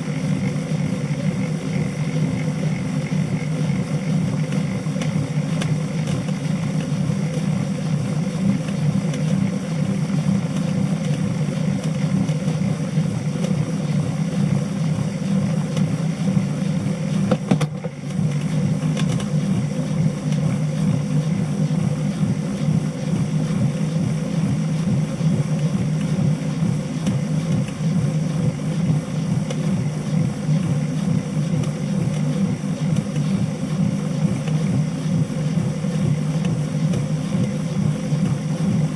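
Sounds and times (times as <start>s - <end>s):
bike trainer humming: 0.0s - 38.9s.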